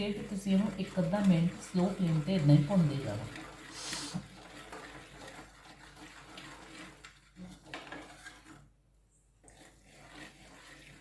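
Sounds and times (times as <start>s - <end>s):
spoon stirring and scraping pan: 0.0s - 11.0s.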